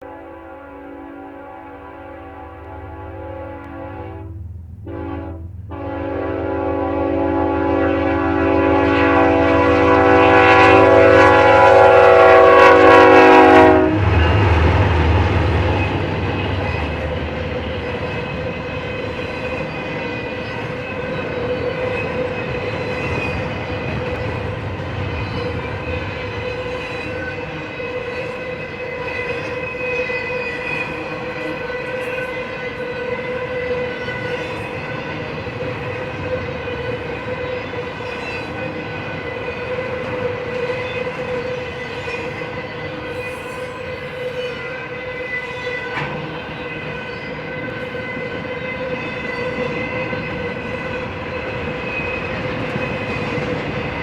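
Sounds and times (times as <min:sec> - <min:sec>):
locomotive horn chord: 0:00.0 - 0:19.1
locomotive engine rumbling: 0:00.0 - 0:41.8.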